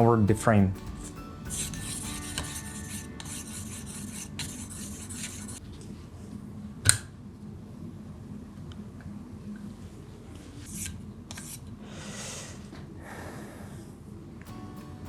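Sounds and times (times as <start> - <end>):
stone rasping on knife blade: 1.0 - 5.6.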